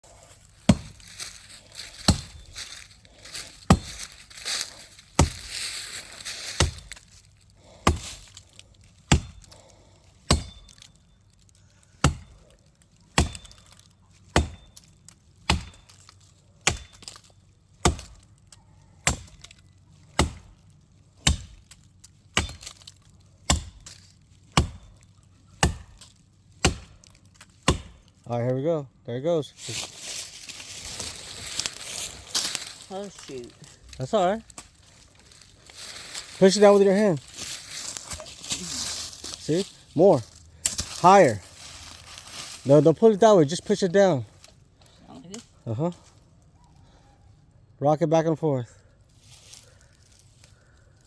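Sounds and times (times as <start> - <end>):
axe chopping wood: 0.6 - 1.0, 2.0 - 2.4, 3.6 - 4.0, 5.2 - 5.5, 6.4 - 7.0, 7.8 - 8.4, 9.0 - 9.5, 10.2 - 10.9, 12.0 - 12.4, 13.1 - 16.0, 16.6 - 18.2, 19.0 - 20.6, 21.2 - 28.1, 40.6 - 41.1.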